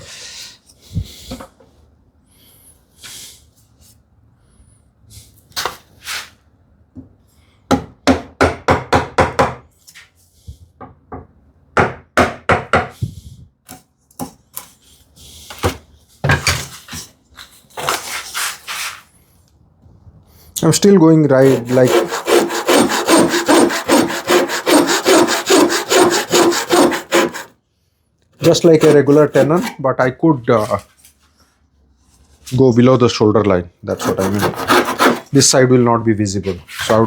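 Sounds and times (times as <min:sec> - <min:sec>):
handsaw cutting wood: 0:21.3 - 0:27.5, 0:28.4 - 0:29.8, 0:33.9 - 0:35.4.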